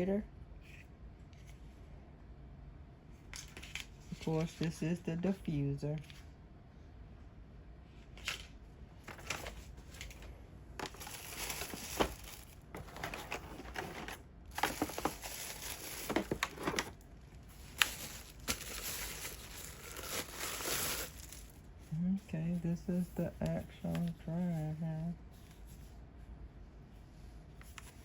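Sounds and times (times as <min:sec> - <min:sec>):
packaging crinkling: 0:09.1 - 0:21.7.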